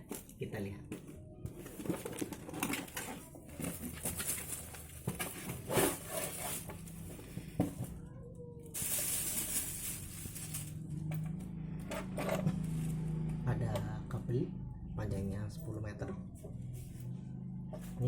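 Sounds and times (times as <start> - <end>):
packaging rustling: 1.6 - 7.1, 8.7 - 10.8
loud plastic rustle: 1.7 - 7.1, 8.7 - 10.8.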